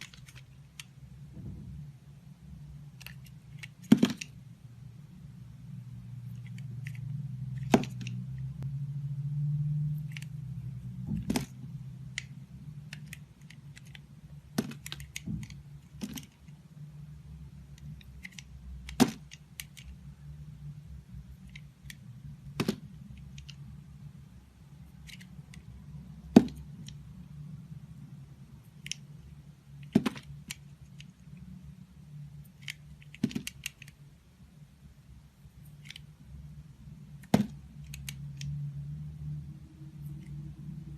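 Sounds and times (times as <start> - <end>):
low hum: 0.0 - 18.5.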